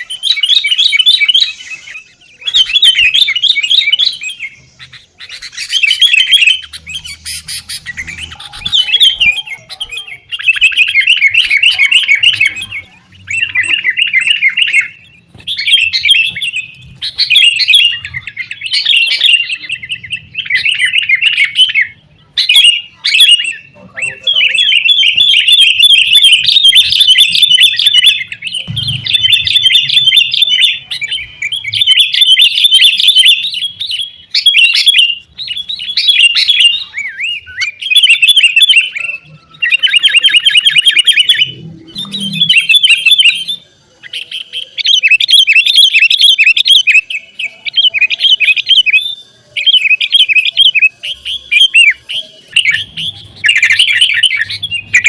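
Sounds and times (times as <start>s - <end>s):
bulbuls chattering: 0.0s - 55.0s.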